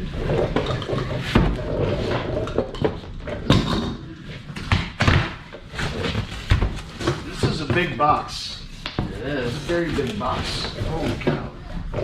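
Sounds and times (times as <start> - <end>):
cardboard rustling and scraping: 5.5 - 12.0.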